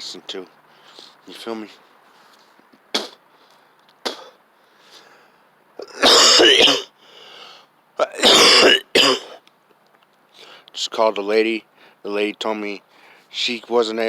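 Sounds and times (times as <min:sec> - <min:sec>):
man coughing harshly: 0:05.8 - 0:06.9, 0:08.1 - 0:09.4.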